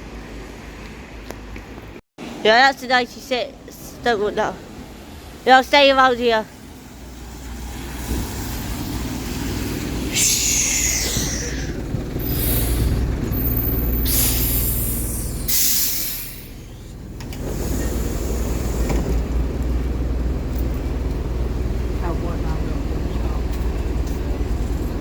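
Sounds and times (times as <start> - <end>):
bus diesel engine running: 2.5 - 25.0
air brakes hissing: 10.0 - 19.2.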